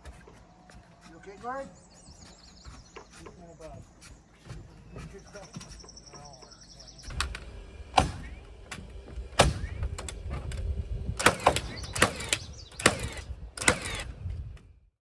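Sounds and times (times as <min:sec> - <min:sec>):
low rumble: 0:07.0 - 0:14.8.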